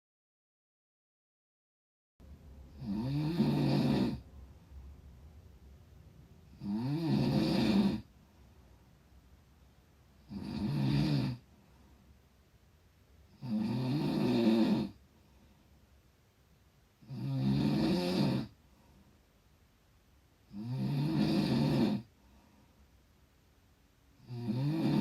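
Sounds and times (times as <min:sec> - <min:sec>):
person snoring: 0:02.7 - 0:04.2, 0:06.5 - 0:08.1, 0:10.2 - 0:11.5, 0:13.3 - 0:15.0, 0:17.0 - 0:18.6, 0:20.5 - 0:22.1, 0:24.2 - 0:25.0.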